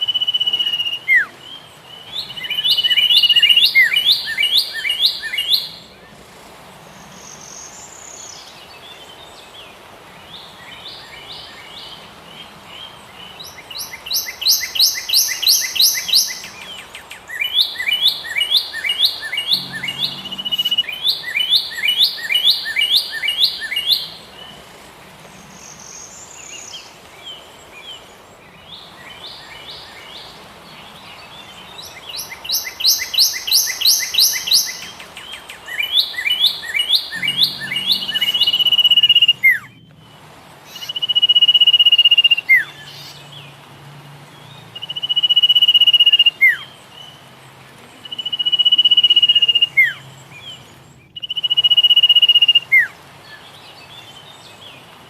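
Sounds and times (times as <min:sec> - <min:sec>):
bird long whistle: 0:00.0 - 0:01.4, 0:13.8 - 0:16.6, 0:35.7 - 0:39.8, 0:40.8 - 0:42.7, 0:44.8 - 0:46.6, 0:48.1 - 0:50.0, 0:51.2 - 0:52.9
high bird chirping: 0:13.4 - 0:24.6, 0:31.7 - 0:40.0.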